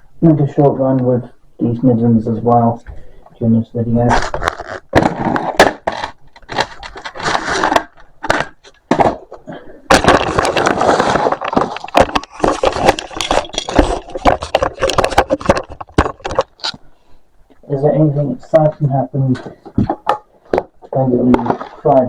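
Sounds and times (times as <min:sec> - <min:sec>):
rustling and scraping: 0:04.0 - 0:16.9
clicks and knocks of handling: 0:04.3 - 0:16.8.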